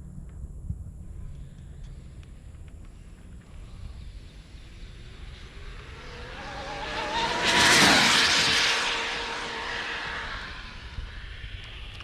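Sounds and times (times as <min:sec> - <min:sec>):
rc car racing past: 0:03.6 - 0:12.0.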